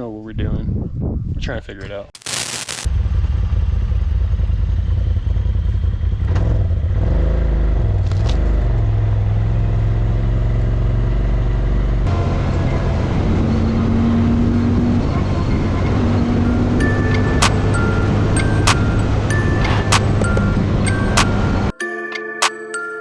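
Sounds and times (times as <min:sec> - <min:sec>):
vehicle engine drone while driving: 0:03.0 - 0:21.7.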